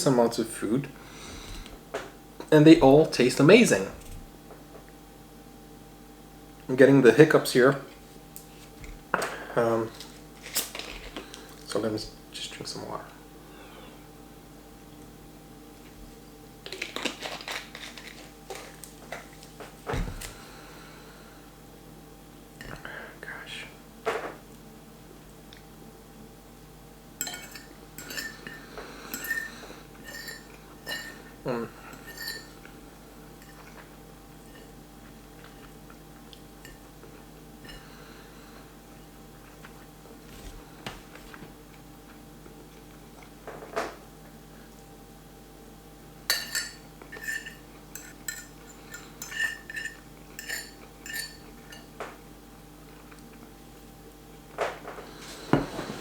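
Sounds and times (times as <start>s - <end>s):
cutlery clinking against dish: 27.2s - 31.2s, 32.0s - 32.6s, 46.3s - 51.9s, 55.2s - 56.0s.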